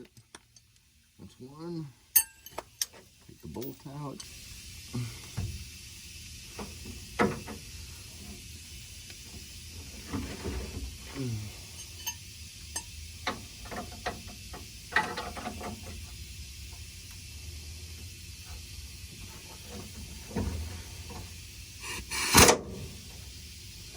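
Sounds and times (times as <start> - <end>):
tools clicking and knocking on metal: 2.2 - 4.3.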